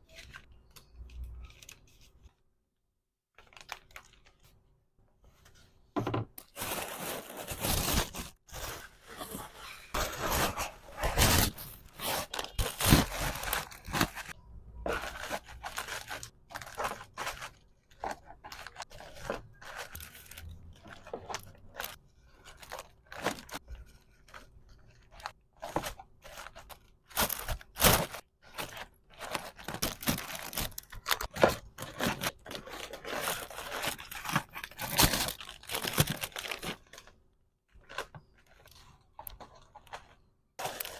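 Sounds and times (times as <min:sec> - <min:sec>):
packaging crinkling and tearing: 0:03.3 - 0:04.5, 0:06.5 - 0:08.7, 0:10.0 - 0:37.1, 0:40.6 - 0:40.9.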